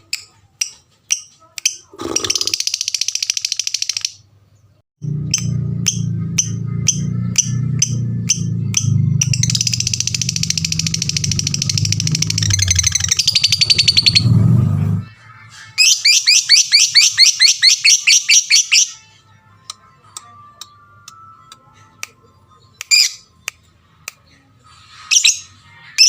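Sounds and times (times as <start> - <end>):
lovebird trilling and chirping: 0.2 - 4.2, 5.3 - 14.3, 15.8 - 19.0.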